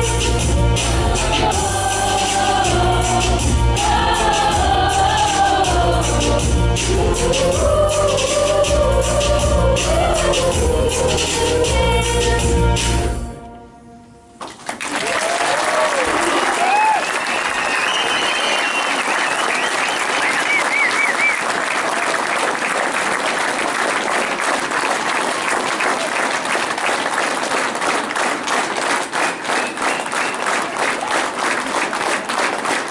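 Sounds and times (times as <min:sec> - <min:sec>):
music: 0:00.0 - 0:14.6
audience applause: 0:14.4 - 0:32.9
shouts and whoops: 0:15.0 - 0:18.6.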